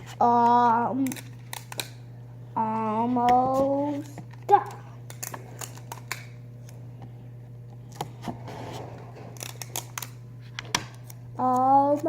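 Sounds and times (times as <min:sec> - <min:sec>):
steady low hum: 0:00.0 - 0:12.0
tape and plastic clicks and rustle: 0:00.4 - 0:02.0, 0:03.3 - 0:06.8, 0:09.1 - 0:12.0.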